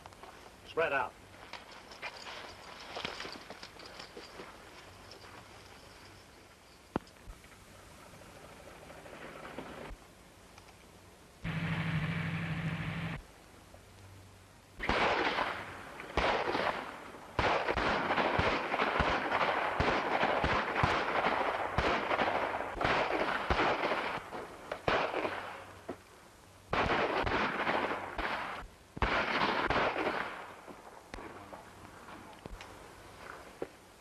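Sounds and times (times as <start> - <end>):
crackling background: 0.0 - 34.0
gunshots in bursts: 14.8 - 25.7, 26.7 - 31.6.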